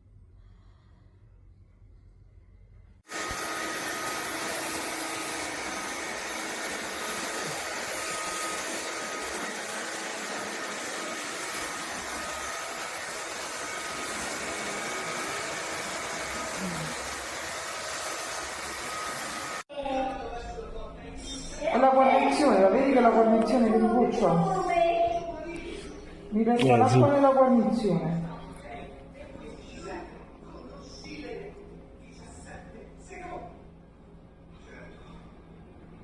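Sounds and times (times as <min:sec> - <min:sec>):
floor vacuum running: 0:03.0 - 0:19.7.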